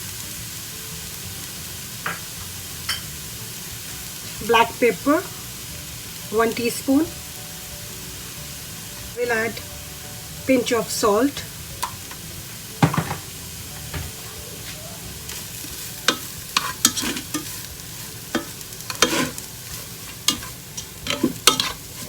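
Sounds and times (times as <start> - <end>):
food sizzling in oil: 0.0 - 22.0
spatula scraping pan: 10.5 - 22.0.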